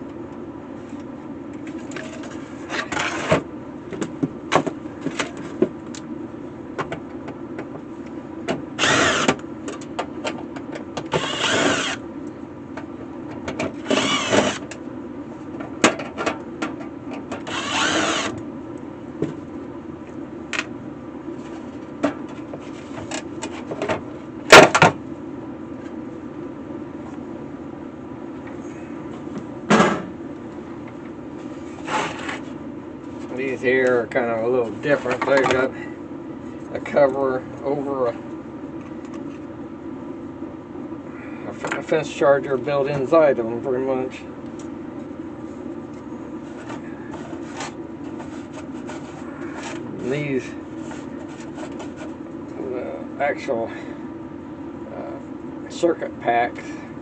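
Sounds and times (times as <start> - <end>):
steady low hum: 0.0 - 57.0
scraping or rustling: 31.4 - 33.3.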